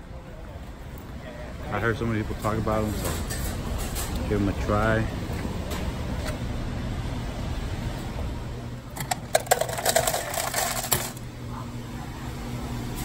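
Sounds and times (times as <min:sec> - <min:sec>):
clicks and rattles: 0:09.0 - 0:11.2.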